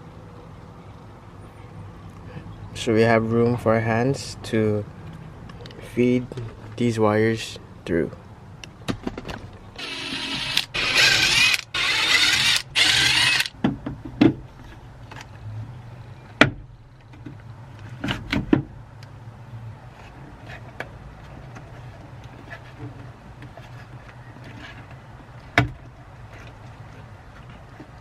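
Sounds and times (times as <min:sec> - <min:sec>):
cordless power driver whirring: 0:09.8 - 0:13.6.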